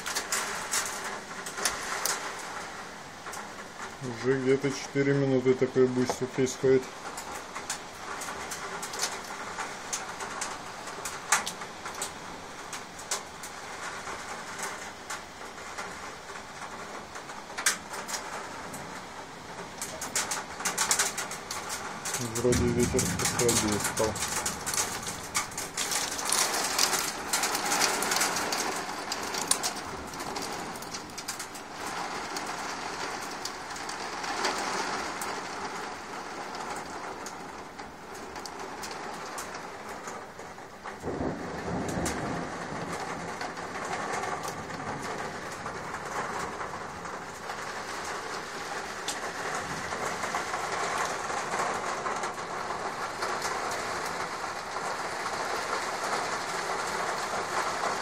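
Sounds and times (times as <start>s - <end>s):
heavy rain pouring: 0.0s - 58.0s
low thunder rumble: 19.5s - 33.3s, 40.5s - 58.0s.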